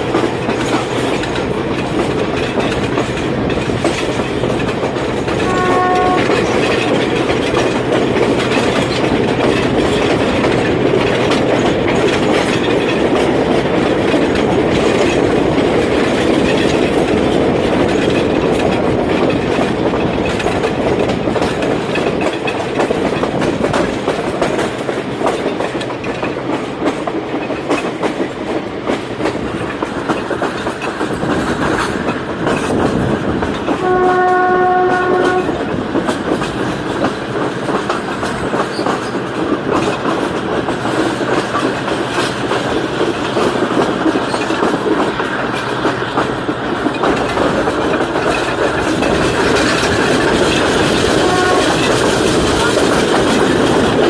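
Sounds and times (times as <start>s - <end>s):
rail-joint clicks: 0.0s - 54.0s
train rumbling on rails: 0.0s - 54.0s
train horn: 5.4s - 6.6s, 33.8s - 35.6s, 51.1s - 51.9s.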